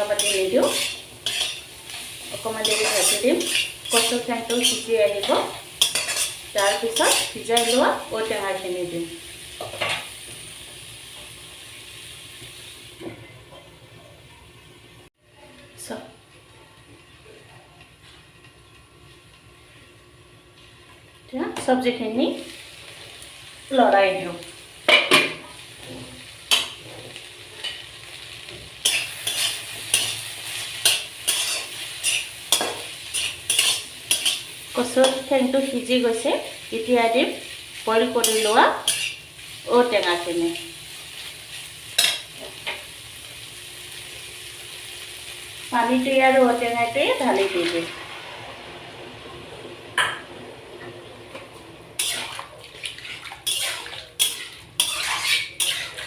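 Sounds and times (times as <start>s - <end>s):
vegetables sizzling in oil: 0.0s - 17.3s, 17.9s - 56.0s
spoon scraping a pan: 0.1s - 8.1s, 28.8s - 35.3s, 38.2s - 39.2s, 42.0s - 42.8s, 52.0s - 56.0s.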